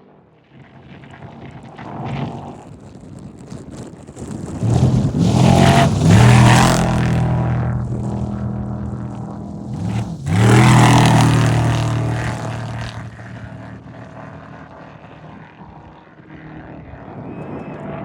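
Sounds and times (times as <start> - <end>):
race vehicle engines passing: 4.1 - 18.0.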